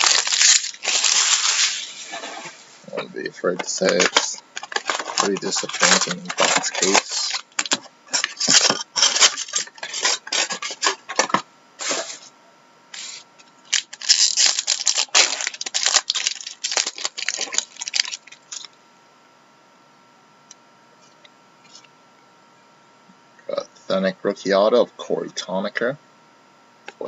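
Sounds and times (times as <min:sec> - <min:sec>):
card packaging tearing and rustling: 0:00.0 - 0:02.8, 0:03.4 - 0:12.3, 0:13.0 - 0:18.7.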